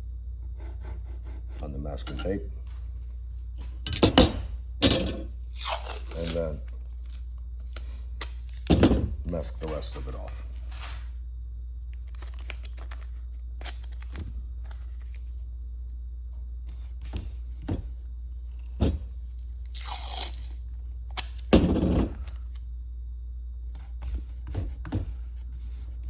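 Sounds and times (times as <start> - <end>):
steady low hum: 0.0 - 26.0
masking tape tearing: 5.4 - 8.7, 19.6 - 21.5
handling rustles and scrapes: 9.3 - 11.2.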